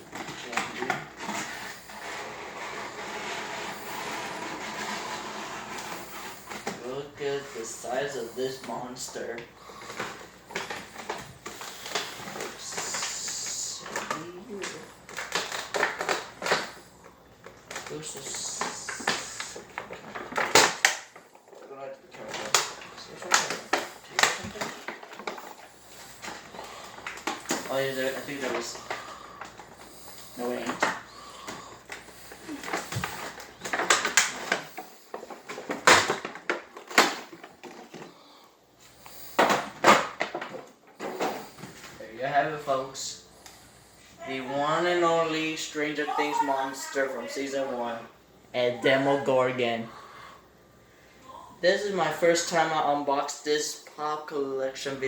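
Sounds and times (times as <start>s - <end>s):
cardboard and plastic rustling: 0.0s - 42.8s
packaging crinkling and clicking: 9.8s - 38.2s
sliding or tearing hiss: 11.4s - 14.1s, 18.0s - 19.8s.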